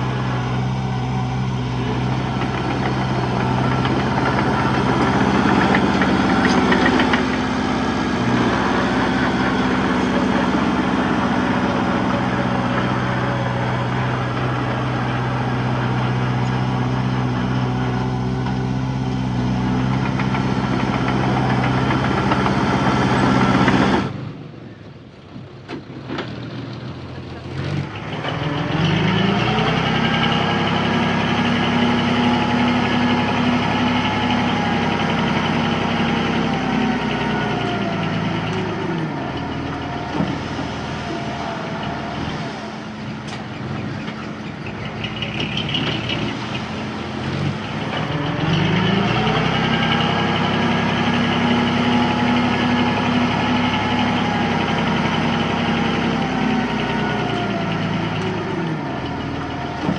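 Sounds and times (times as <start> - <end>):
bulldozer diesel engine revving: 0.0 - 24.4, 25.8 - 59.9
rattling clatter: 1.9 - 7.6.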